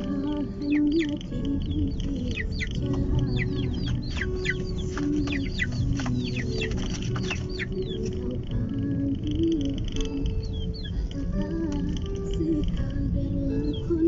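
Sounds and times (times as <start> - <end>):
car rumbling on road: 0.0 - 14.0
chicken chirping: 0.6 - 8.2.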